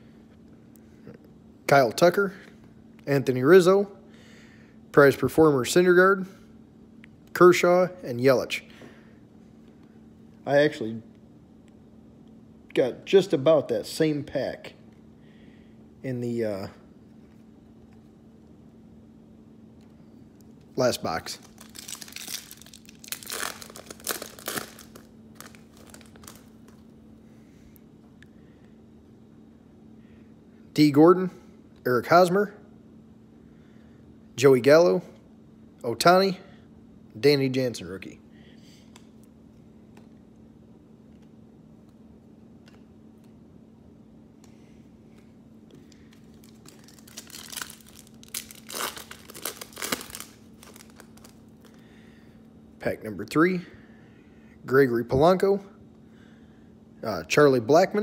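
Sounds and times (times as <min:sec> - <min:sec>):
foil wrapper crinkling and tearing: 0:21.2 - 0:26.8, 0:46.1 - 0:51.8.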